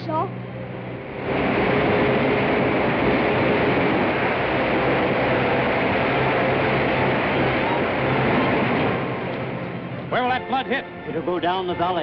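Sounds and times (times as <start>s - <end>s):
floodwater rushing: 1.0s - 10.2s.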